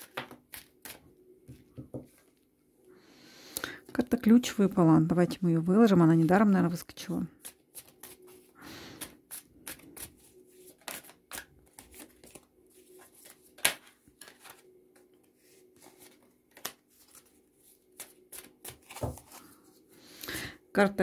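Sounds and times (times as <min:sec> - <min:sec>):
cards being shuffled: 0:07.4 - 0:19.6.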